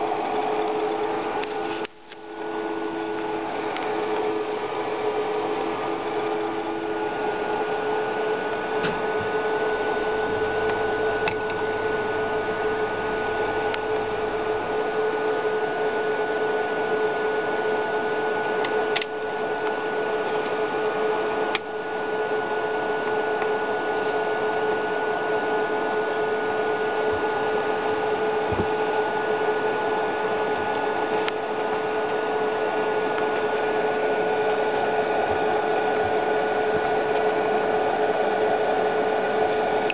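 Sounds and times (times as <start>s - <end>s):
heater coil humming: 0.0s - 39.9s.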